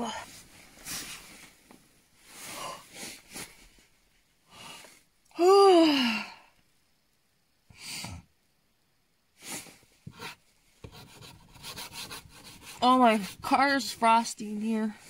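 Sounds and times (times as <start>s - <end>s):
fabric rustling: 0.0s - 4.4s
woman breathing: 2.2s - 3.6s, 4.4s - 6.7s
woman groaning: 5.3s - 6.5s.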